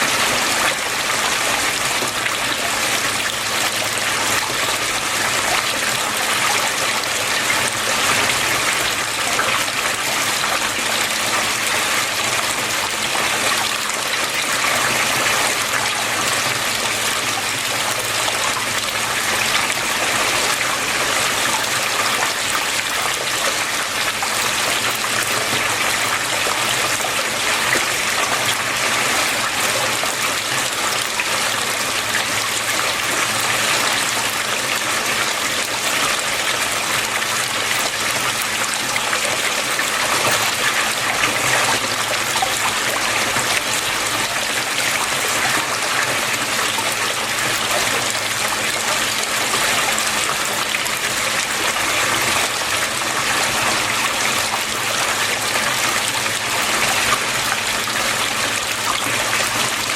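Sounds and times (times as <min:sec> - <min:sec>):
water flowing and trickling: 0:00.0 - 0:59.9.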